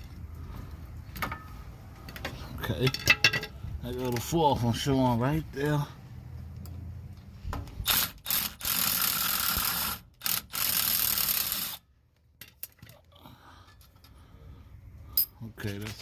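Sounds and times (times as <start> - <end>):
ratchet wrench spinning: 7.8 - 11.8.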